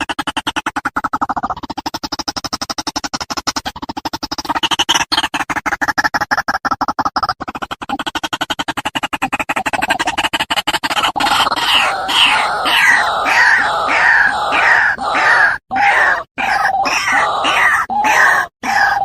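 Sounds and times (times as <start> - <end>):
bird rattle call: 7.5 - 19.0
bird calling with croaking notes: 10.9 - 19.0.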